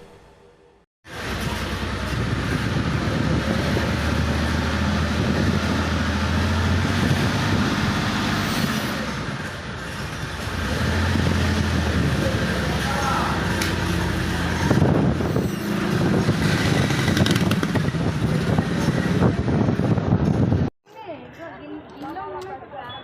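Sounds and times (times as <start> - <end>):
outdoor noise: 0.0 - 23.0
engine humming: 1.1 - 20.7.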